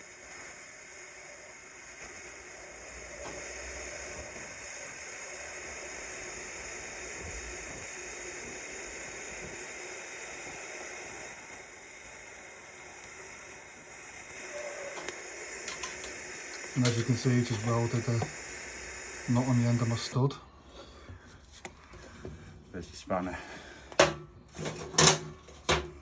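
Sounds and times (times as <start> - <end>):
welding arc hissing: 0.0 - 20.4.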